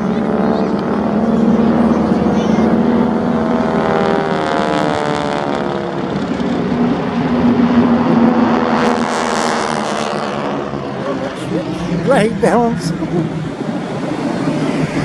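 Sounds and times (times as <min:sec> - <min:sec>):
propeller aircraft flying past: 0:00.0 - 0:15.0.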